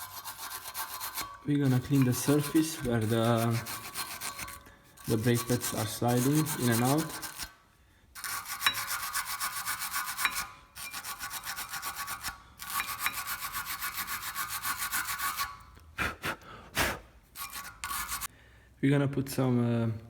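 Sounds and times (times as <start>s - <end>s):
scrubbing metal brake parts: 0.0s - 7.5s, 8.2s - 15.6s.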